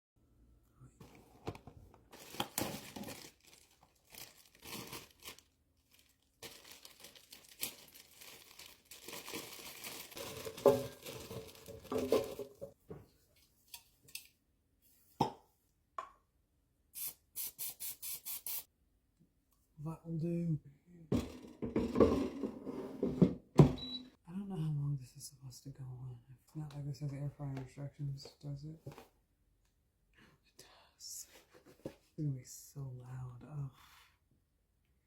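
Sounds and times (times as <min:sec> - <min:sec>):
plastic packaging tearing and crinkling: 0:02.1 - 0:12.4.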